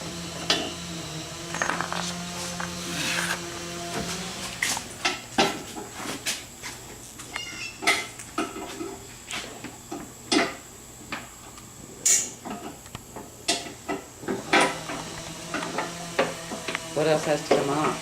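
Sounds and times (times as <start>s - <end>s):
metal parts clinking and knocking: 1.5s - 2.7s.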